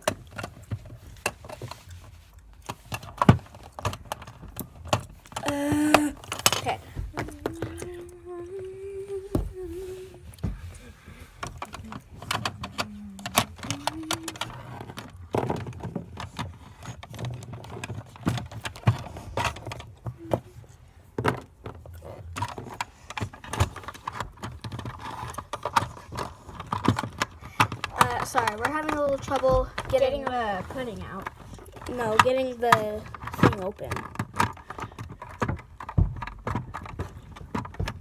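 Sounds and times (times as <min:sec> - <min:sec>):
hands rattling a container: 0:09.1 - 0:38.0.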